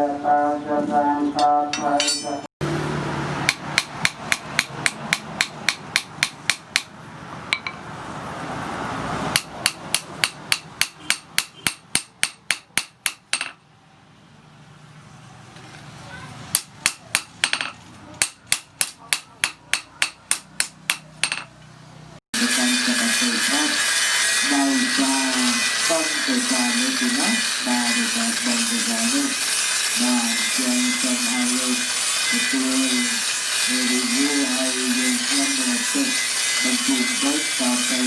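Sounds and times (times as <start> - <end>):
steady background noise: 0.0 - 22.6
hammer ringing on anvil: 1.7 - 2.5, 7.6 - 7.8.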